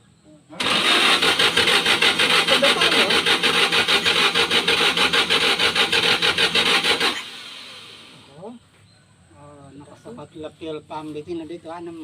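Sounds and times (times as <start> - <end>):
engine cranking without starting: 0.6 - 8.4.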